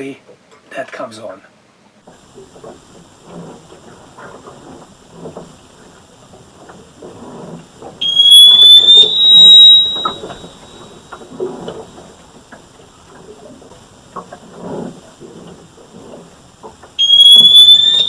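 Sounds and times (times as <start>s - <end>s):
piercing rising tone: 8.0s - 12.4s, 17.0s - 18.0s.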